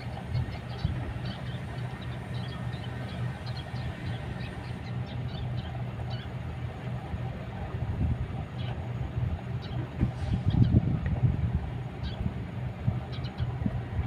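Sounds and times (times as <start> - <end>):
excavator diesel engine rumbling: 0.0 - 14.0.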